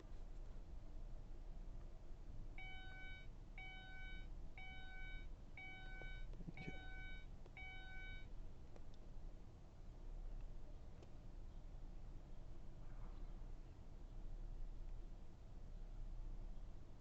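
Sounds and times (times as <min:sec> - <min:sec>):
electronic beep: 0:02.6 - 0:08.3.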